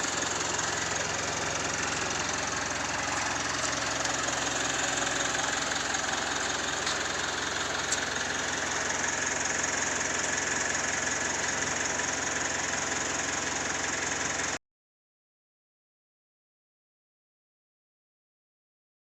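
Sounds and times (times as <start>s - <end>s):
vehicle engine idling: 0.0s - 14.6s.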